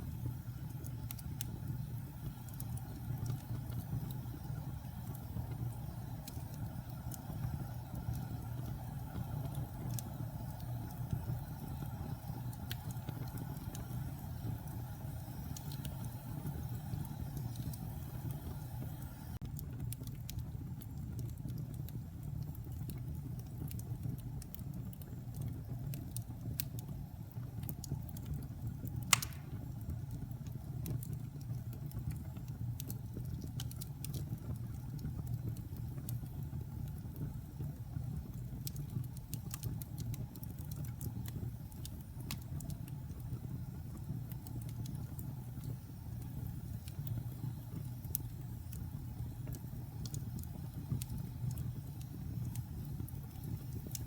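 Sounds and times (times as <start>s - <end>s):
fire rumbling: 0.0s - 54.0s
wood crackling: 28.8s - 29.8s
loud pop from fire: 29.1s - 29.7s.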